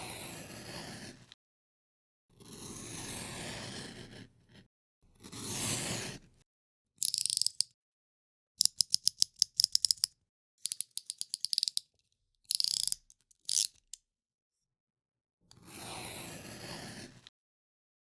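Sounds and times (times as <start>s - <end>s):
knife slider ratcheting clicks: 7.0s - 7.7s, 8.6s - 11.8s, 12.5s - 14.0s.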